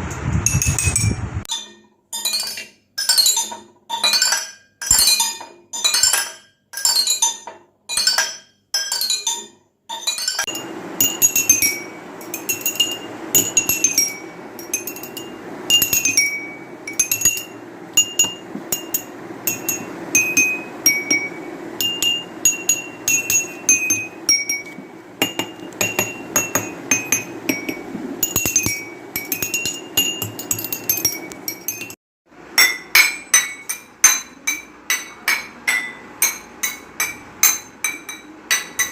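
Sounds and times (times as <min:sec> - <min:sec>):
water glasses ringing notes: 0:10.1 - 0:32.0
steady low hum: 0:10.5 - 0:38.7.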